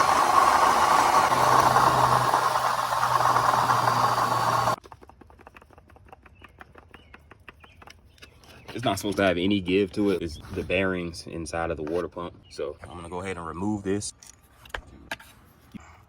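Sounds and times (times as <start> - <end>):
engine running: 0.0 - 4.8
water pump rattling and grinding: 0.0 - 6.0.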